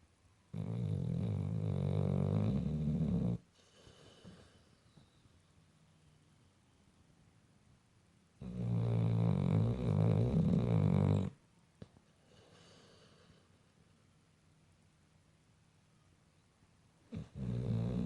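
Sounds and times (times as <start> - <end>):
dog snoring: 0.5 - 4.7, 8.4 - 11.4, 12.2 - 13.5, 17.1 - 18.0.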